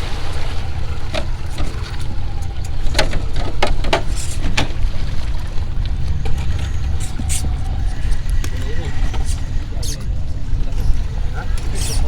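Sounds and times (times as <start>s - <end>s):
low rumble: 0.0s - 12.0s
rc crawler clicking on rocks: 5.7s - 10.1s.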